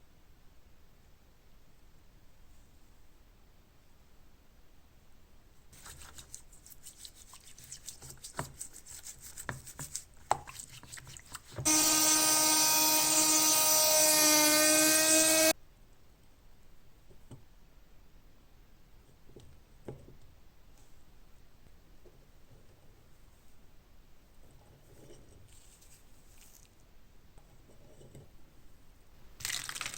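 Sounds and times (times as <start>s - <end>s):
electric grinder cutting metal: 11.7s - 15.5s.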